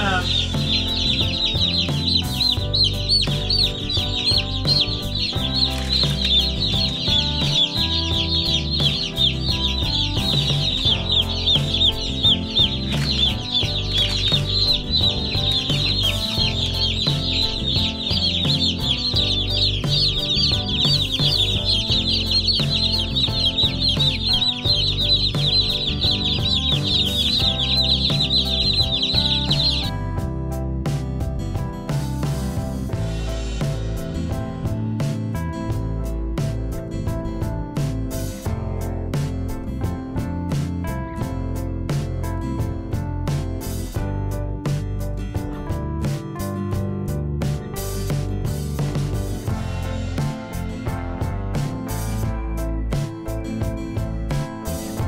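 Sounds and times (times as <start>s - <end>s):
chicks peeping: 0.0s - 30.0s
background music: 0.0s - 55.0s.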